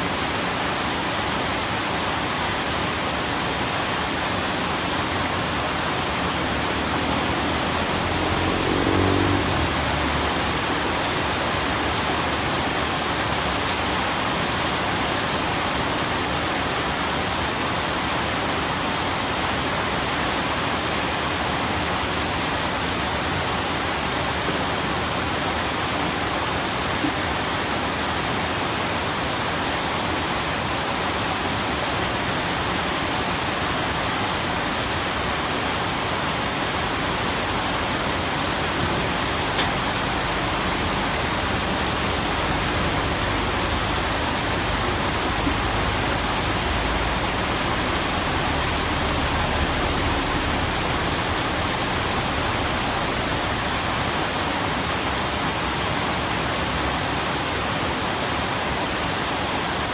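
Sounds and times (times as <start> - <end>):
dense rain: 0.0 - 59.9
low rumble: 39.2 - 54.2.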